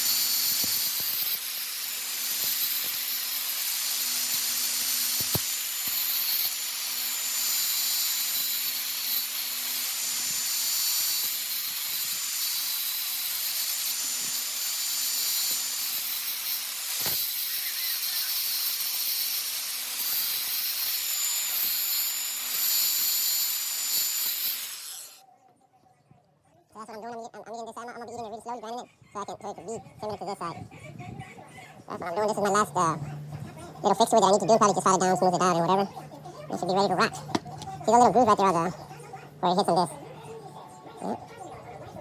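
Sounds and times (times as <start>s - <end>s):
electric grinder grinding metal: 0.0s - 25.2s, 31.9s - 39.9s.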